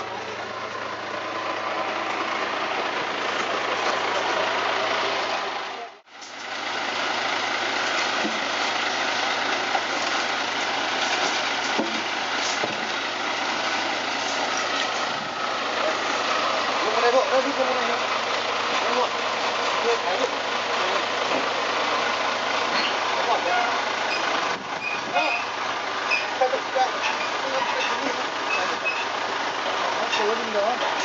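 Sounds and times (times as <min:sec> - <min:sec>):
heavy machinery engine humming: 0:00.0 - 0:31.0.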